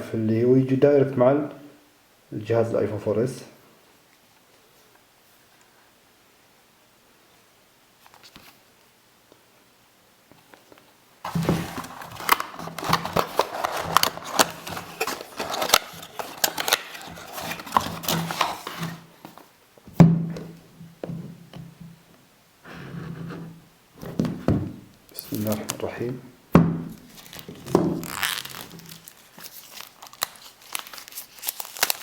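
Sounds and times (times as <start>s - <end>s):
phone packaging clicks and crinkling: 10.6s - 19.5s, 26.9s - 32.0s.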